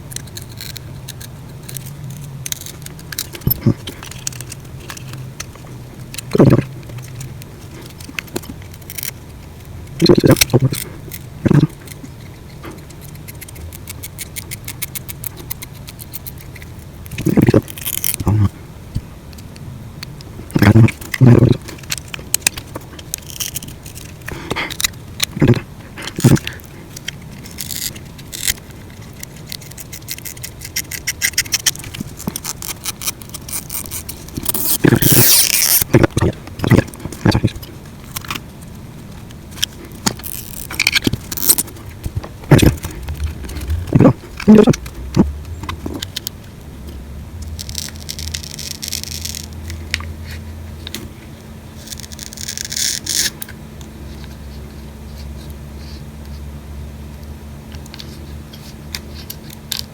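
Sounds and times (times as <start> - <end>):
small tool scraping adhesive: 0.1 - 9.2, 21.7 - 38.4.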